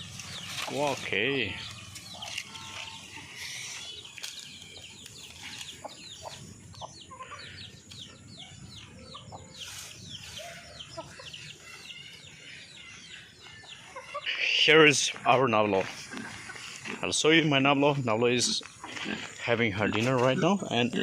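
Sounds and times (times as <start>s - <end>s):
chicks peeping and clucking: 0.0s - 17.8s.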